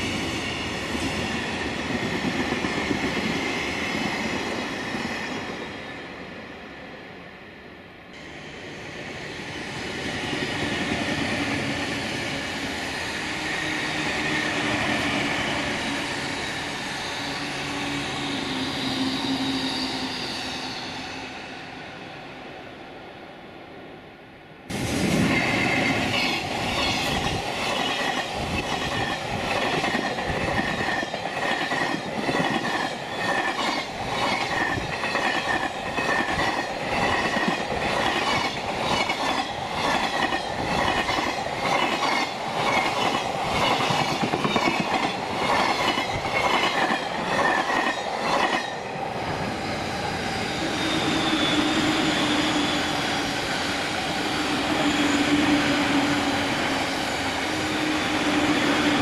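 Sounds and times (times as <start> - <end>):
train wheels clattering over rails: 24.7 - 48.8.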